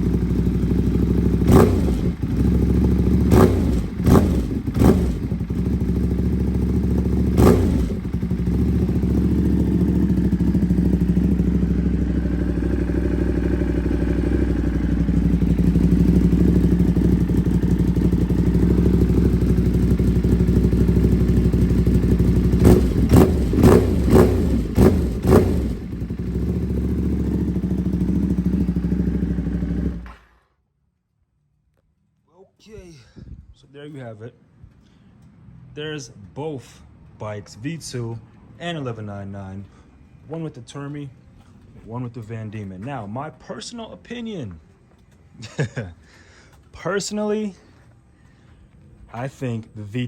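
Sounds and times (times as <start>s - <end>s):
motorcycle engine idling: 0.0s - 30.4s
motorcycle throttle blips: 0.0s - 30.4s.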